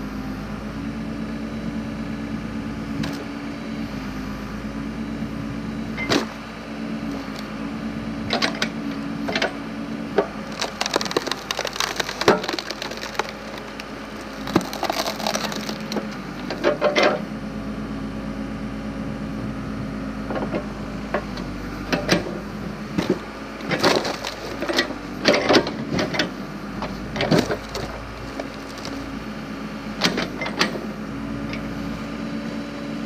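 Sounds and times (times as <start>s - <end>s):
backhoe engine running: 0.0s - 33.0s
wood cracking and splintering: 10.2s - 17.2s, 23.0s - 29.4s.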